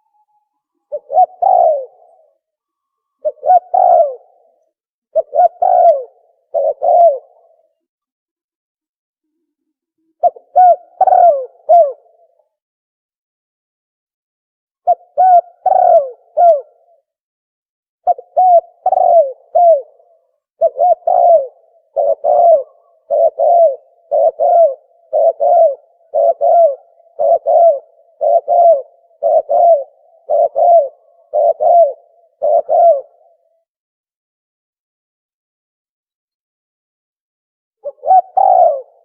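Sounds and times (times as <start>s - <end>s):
dove cooing: 0.0s - 2.5s, 3.2s - 7.8s, 10.2s - 12.4s, 14.8s - 17.0s, 18.0s - 33.6s, 37.8s - 39.0s.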